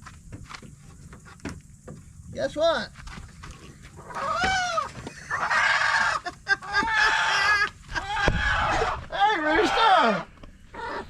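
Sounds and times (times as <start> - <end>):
rooster squawking: 4.1 - 11.0.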